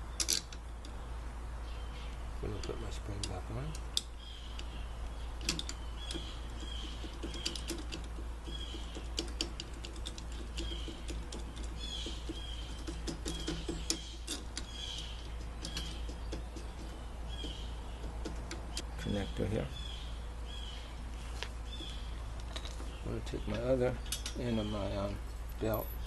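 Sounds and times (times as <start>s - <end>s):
small bird chirping: 0.0s - 26.0s
steady low hum: 0.0s - 26.0s
light metallic clicks and taps: 2.1s - 4.8s.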